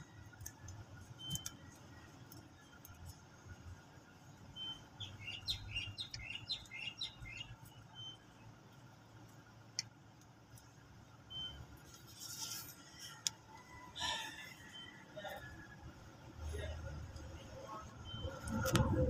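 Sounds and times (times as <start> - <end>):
small bird chirping: 4.5 - 8.5.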